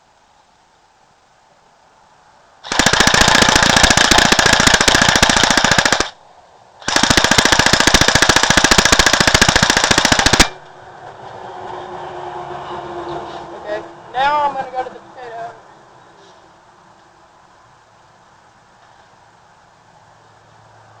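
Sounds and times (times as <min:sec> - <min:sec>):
airsoft rifle firing bursts: 0:02.6 - 0:06.2, 0:06.8 - 0:10.6.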